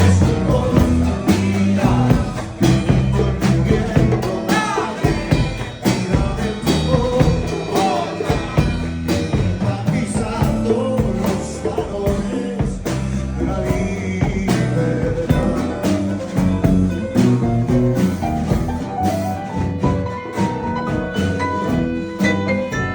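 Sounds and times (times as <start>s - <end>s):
person singing: 0.0s - 17.8s
blues rock band music: 0.0s - 22.9s.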